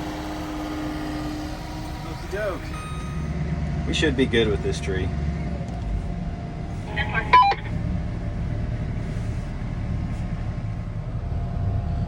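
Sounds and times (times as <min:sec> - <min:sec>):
heavy machine engine rumbling: 0:00.0 - 0:12.0
short high beep: 0:02.6 - 0:03.3, 0:06.9 - 0:07.7.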